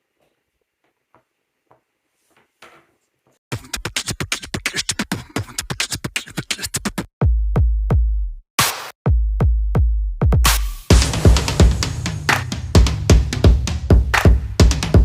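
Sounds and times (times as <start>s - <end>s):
electronic drum machine music: 3.5s - 8.0s, 10.3s - 15.0s
booming bass drum beats: 7.2s - 8.3s, 9.0s - 15.0s.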